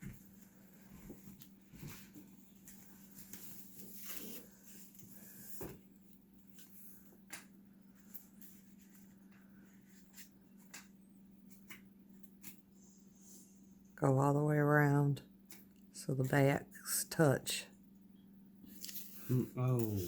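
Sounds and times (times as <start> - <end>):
paper rustling: 18.7 - 20.0.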